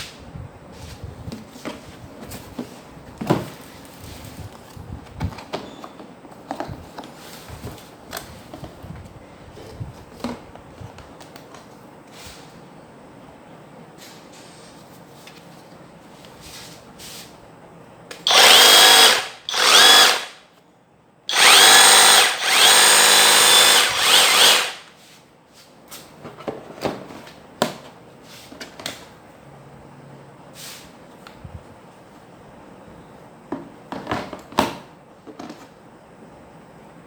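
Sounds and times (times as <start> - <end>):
electric drill motor whirring: 18.3 - 20.4, 21.3 - 24.9.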